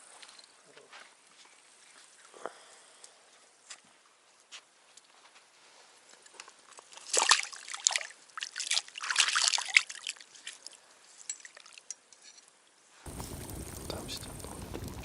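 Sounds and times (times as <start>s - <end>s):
water sloshing and splashing: 6.8s - 10.8s.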